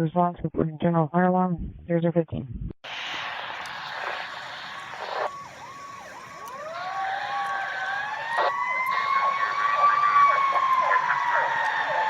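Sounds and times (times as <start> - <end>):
electronic siren yelping: 3.7 - 12.0
mechanical siren wailing: 4.5 - 12.0.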